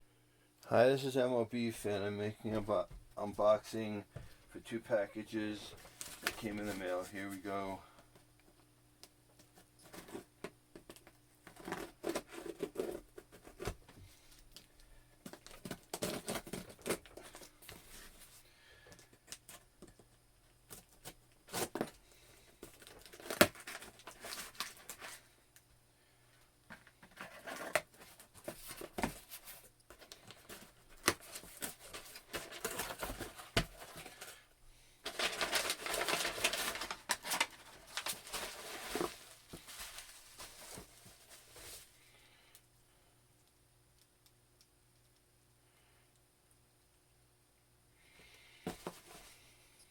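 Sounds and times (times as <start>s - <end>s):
packaging rustling and tearing: 5.8s - 7.1s, 9.8s - 13.8s, 15.2s - 18.2s, 20.7s - 25.3s, 27.0s - 34.4s, 35.0s - 42.0s.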